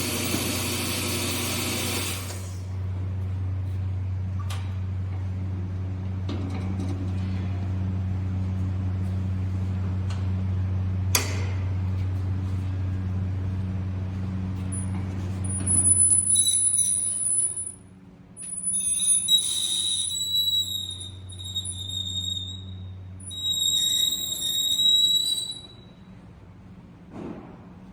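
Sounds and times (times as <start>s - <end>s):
band saw motor humming: 0.0s - 2.5s.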